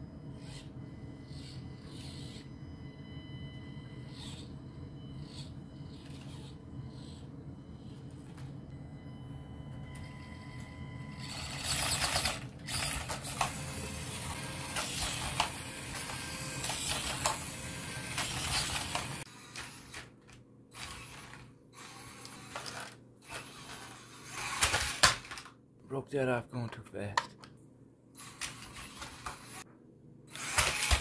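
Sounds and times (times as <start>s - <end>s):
electric motor and drivetrain whirring: 0.0s - 25.5s, 28.2s - 29.7s, 30.3s - 31.0s.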